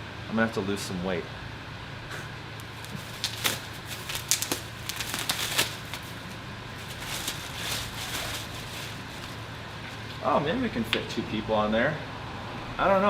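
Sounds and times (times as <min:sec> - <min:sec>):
steady low hum: 0:00.0 - 0:13.0
protective packaging crackling: 0:02.6 - 0:10.2.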